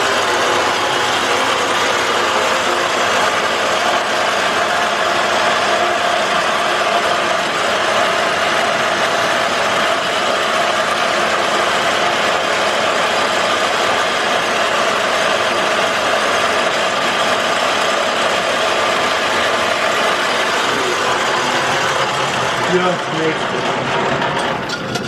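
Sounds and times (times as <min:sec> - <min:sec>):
metal lathe humming: 0:00.0 - 0:25.0.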